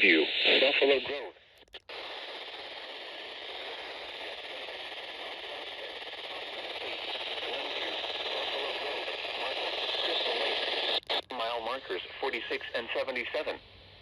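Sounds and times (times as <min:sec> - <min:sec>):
radio static hiss: 0:00.0 - 0:14.0.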